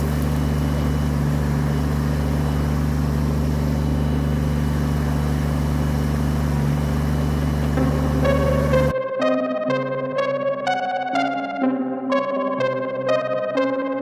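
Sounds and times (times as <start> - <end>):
tractor diesel engine running: 0.0 - 8.9.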